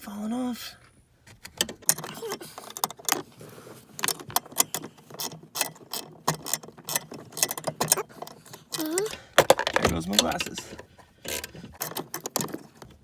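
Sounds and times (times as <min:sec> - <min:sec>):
socket ratchet clicking: 0:04.0 - 0:12.7.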